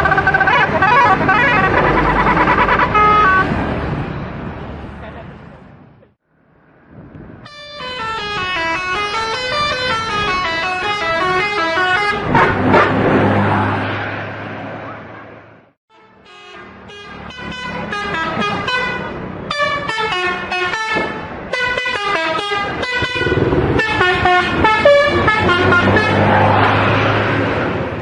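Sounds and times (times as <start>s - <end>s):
multi-tone bus air horn melody: 0.0s - 3.5s, 7.4s - 12.8s, 15.9s - 26.3s
bus engine rumble: 0.0s - 28.0s
rush of passing vehicle: 1.0s - 7.5s, 12.2s - 15.8s, 22.7s - 28.0s.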